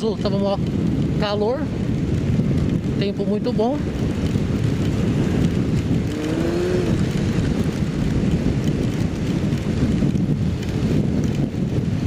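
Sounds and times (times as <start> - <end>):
wind and road noise: 0.0 - 12.0
motorcycle engine at speed: 1.8 - 12.0.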